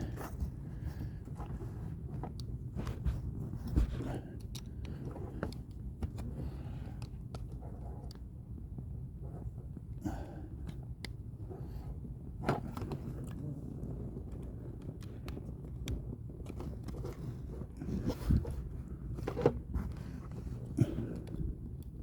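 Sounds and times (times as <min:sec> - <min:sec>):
seat belt parts clicking and scraping: 0:00.0 - 0:09.7, 0:10.4 - 0:22.0.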